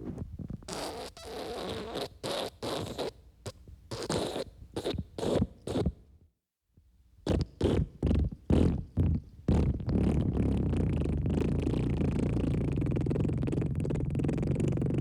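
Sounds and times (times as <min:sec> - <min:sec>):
wet farts: 0:07.3 - 0:15.0.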